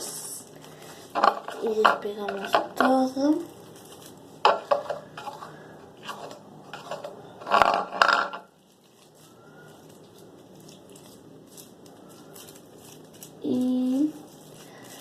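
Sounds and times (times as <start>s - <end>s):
crunchy slime crackling and squelching: 0.1s - 4.4s, 8.4s - 15.0s.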